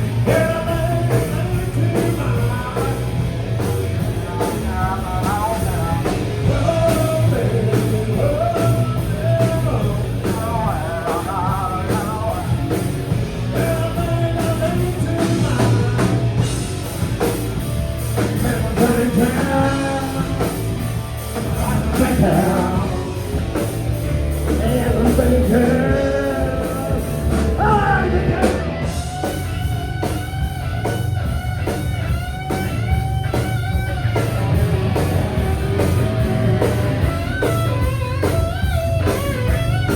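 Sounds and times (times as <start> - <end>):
live rock band playing: 0.0 - 39.9
person singing: 18.2 - 20.6, 21.4 - 23.6, 24.4 - 29.1.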